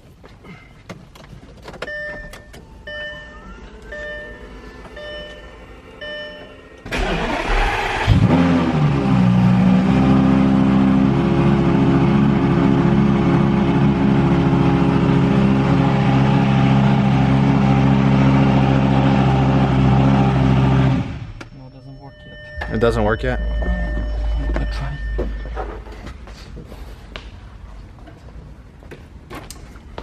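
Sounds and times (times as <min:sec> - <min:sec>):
electronic chime beeping: 0:01.9 - 0:06.8, 0:21.5 - 0:25.6
car engine revving and idling: 0:06.9 - 0:21.4, 0:22.3 - 0:26.0.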